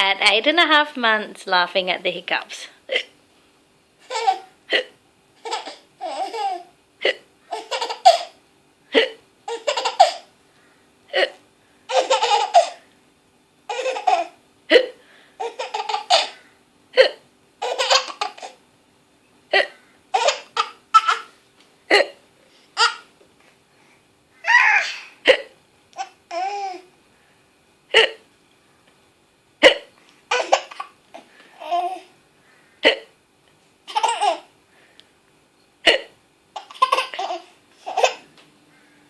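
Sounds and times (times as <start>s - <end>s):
baby laughing: 4.0s - 10.3s, 11.1s - 12.8s, 13.7s - 14.8s, 15.4s - 16.4s, 17.6s - 18.6s, 19.6s - 21.3s, 22.8s - 23.1s, 24.4s - 26.9s, 30.3s - 32.1s, 33.9s - 34.5s, 36.6s - 38.3s.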